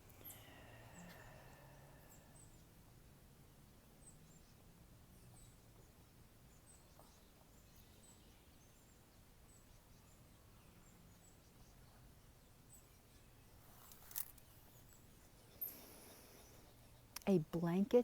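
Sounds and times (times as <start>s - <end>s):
brief rustle: 13.6s - 15.0s.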